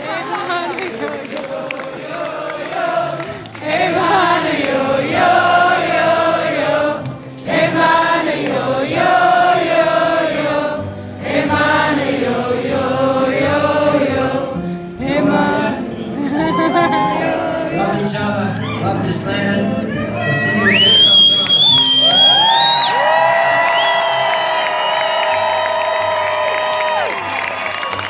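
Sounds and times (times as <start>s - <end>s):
wordless chant-like singing: 0.1s - 20.9s.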